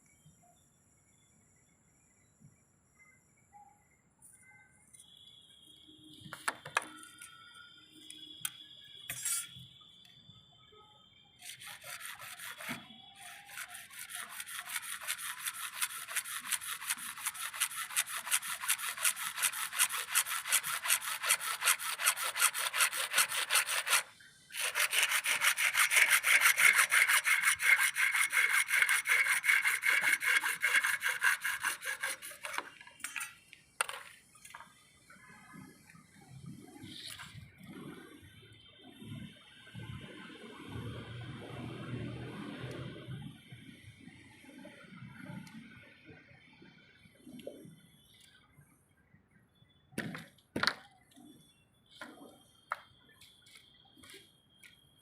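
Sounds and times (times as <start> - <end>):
hacksaw cutting plastic pipe: 11.4 - 34.0.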